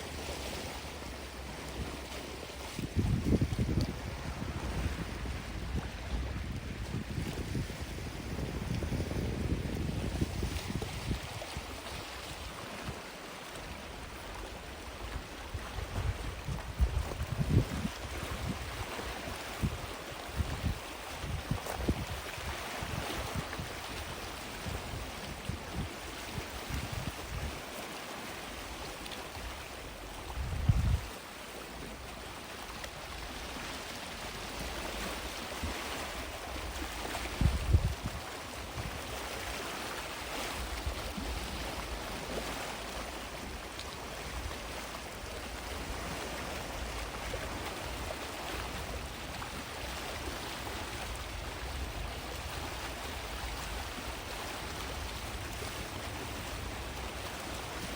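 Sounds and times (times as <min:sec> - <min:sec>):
sea waves on sandy shore: 0:00.0 - 0:57.9.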